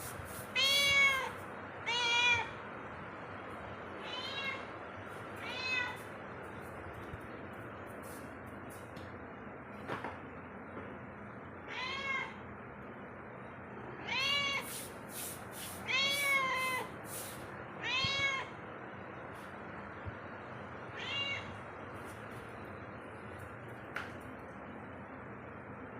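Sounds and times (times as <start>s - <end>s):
cat meowing: 0.5s - 2.6s, 4.0s - 4.7s, 5.4s - 6.1s, 11.6s - 12.4s, 14.0s - 14.9s, 15.8s - 16.9s, 17.8s - 18.6s, 20.9s - 21.6s.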